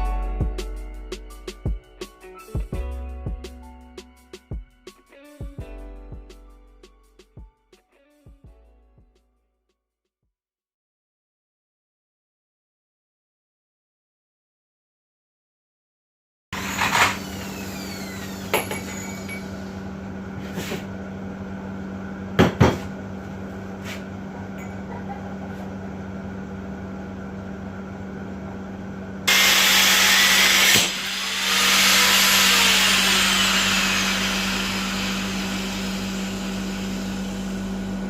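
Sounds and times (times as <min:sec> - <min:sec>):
loud power tool running: 0:16.6 - 0:20.2, 0:29.2 - 0:38.0.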